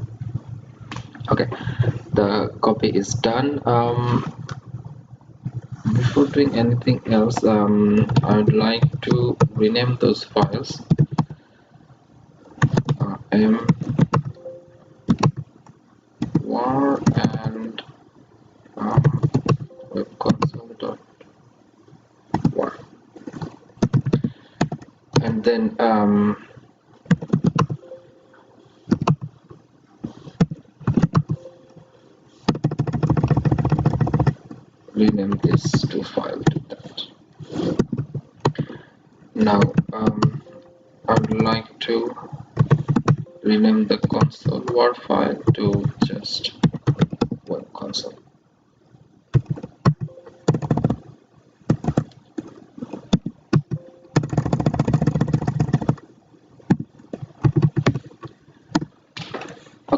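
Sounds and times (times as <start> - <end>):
keyboard typing: 5.5 - 9.8, 10.4 - 11.4, 12.6 - 15.5, 16.2 - 17.6, 18.8 - 20.6, 22.3 - 22.7, 23.3 - 25.4, 27.1 - 28.2, 28.9 - 29.4, 30.3 - 36.9, 37.6 - 38.8, 39.4 - 41.6, 42.5 - 44.8, 45.4 - 47.5, 49.3 - 51.0, 51.7 - 56.1, 56.7 - 58.9.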